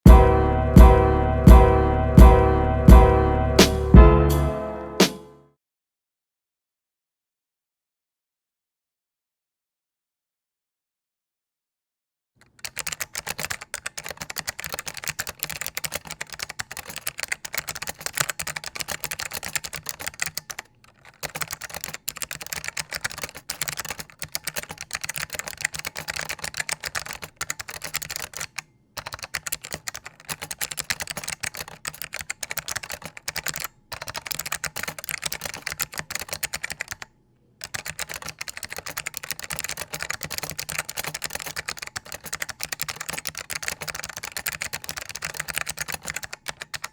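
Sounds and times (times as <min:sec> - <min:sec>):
mechanical keyboard clicks: 0:12.4 - 0:46.9.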